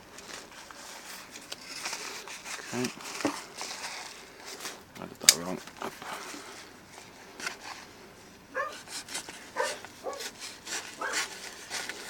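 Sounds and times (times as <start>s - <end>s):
dog barking: 8.5s - 8.8s, 9.6s - 10.3s, 11.0s - 11.3s.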